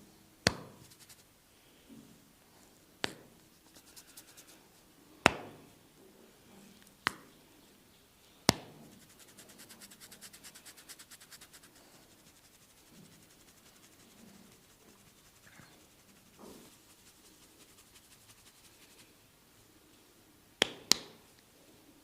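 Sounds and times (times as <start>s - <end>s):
sharp cracks from head massage: 8.5s - 19.1s
fast faint ticks: 8.9s - 19.1s.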